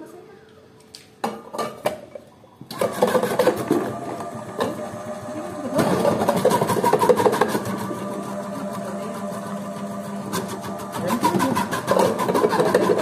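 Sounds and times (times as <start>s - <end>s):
machine motor humming: 3.6s - 13.0s.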